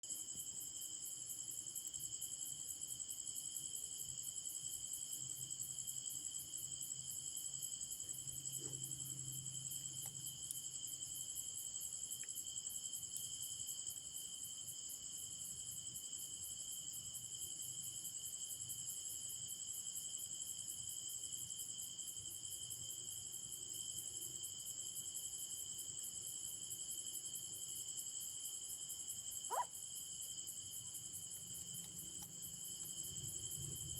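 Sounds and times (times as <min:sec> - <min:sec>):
insects trilling: 0:22.2 - 0:33.9.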